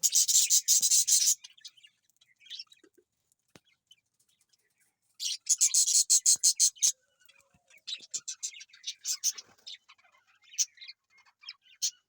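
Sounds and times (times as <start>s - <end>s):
baby parrot shrill chirps: 0.0s - 1.4s, 5.2s - 6.9s.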